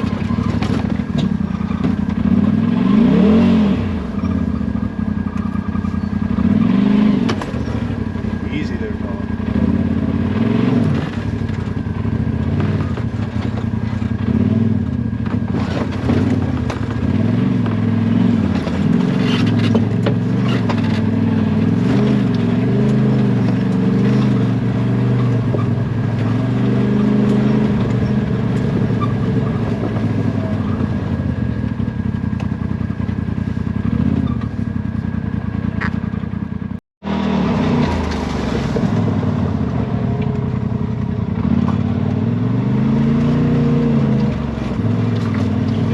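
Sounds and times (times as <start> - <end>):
knocks and rattles: 0.0 - 2.6, 10.8 - 34.8
utility vehicle engine running: 0.0 - 45.9.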